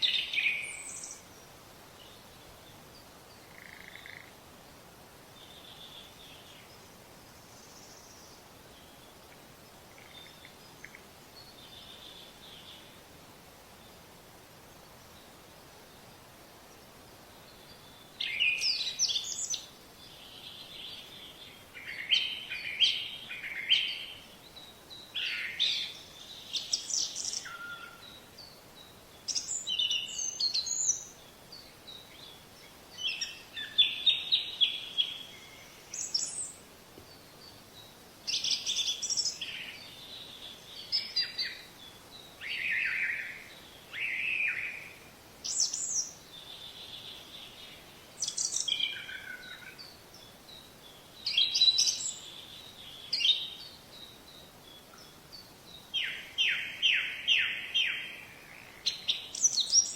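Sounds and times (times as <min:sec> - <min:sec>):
songbird chirping and whistling: 0:48.2 - 0:49.7, 0:51.2 - 0:55.4.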